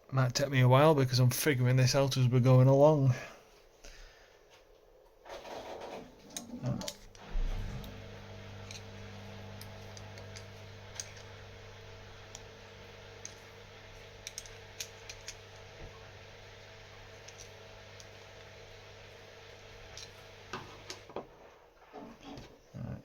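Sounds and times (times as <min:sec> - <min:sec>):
steady low hum: 0:06.2 - 0:21.4.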